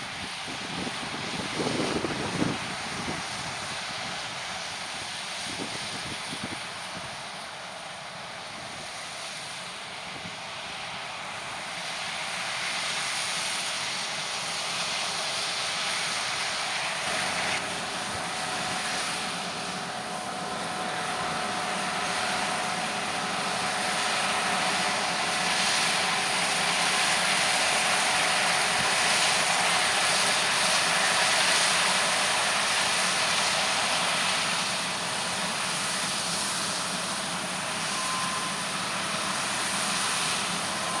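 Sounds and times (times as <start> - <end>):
farm machinery engine running: 0.0 - 41.0
faint steady whine: 16.0 - 41.0.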